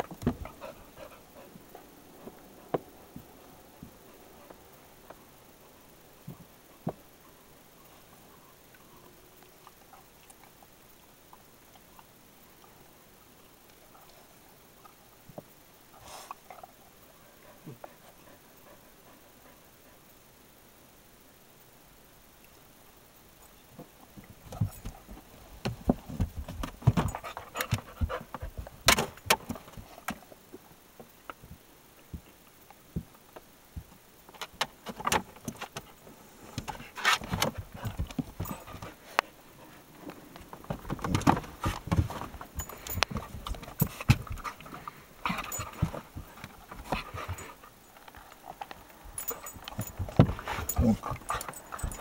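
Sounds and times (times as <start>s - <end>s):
dog panting: 0.2s - 2.8s, 26.9s - 28.7s, 41.5s - 47.7s, 49.2s - 52.0s.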